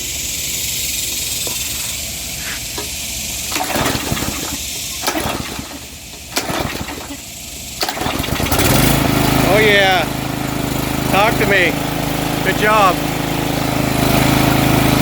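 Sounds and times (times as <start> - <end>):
gasoline pouring into tank: 2.9 - 9.4.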